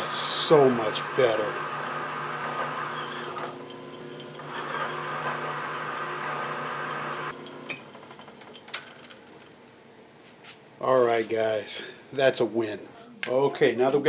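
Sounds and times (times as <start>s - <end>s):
electric motor humming: 0.0s - 7.7s.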